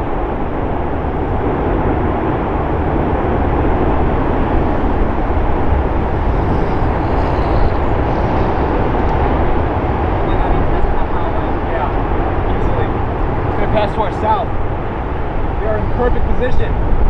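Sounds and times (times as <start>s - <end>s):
strong wind rushing with low rumble: 0.0s - 17.0s.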